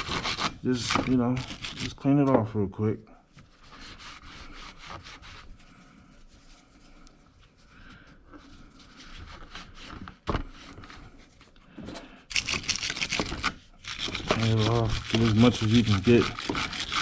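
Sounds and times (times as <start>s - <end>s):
wire brush scrubbing metal: 13.8s - 17.0s.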